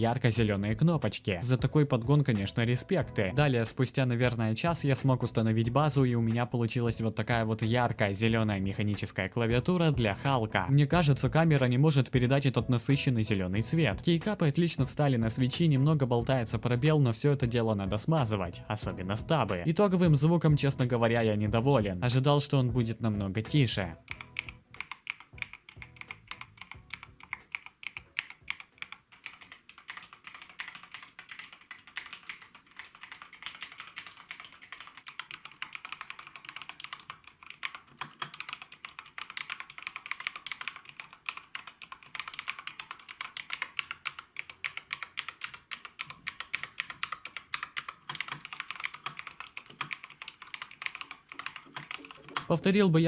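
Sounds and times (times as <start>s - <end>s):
rapid mechanical keyboard typing: 24.0s - 52.6s.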